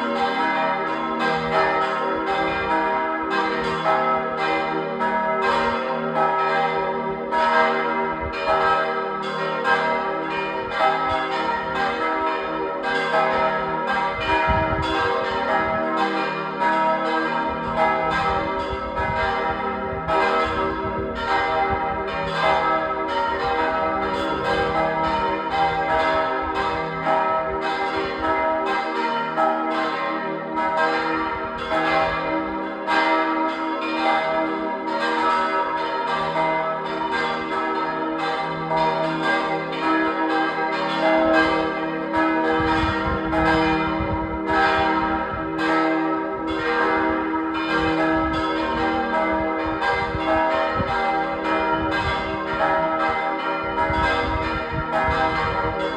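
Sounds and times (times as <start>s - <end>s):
church bells pealing: 0.0s - 55.9s.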